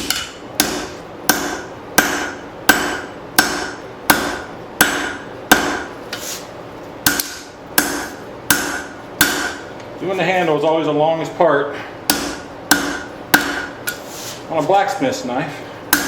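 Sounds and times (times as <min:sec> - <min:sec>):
hammer striking steel on anvil: 0:00.0 - 0:06.0, 0:07.0 - 0:09.7, 0:12.1 - 0:14.0.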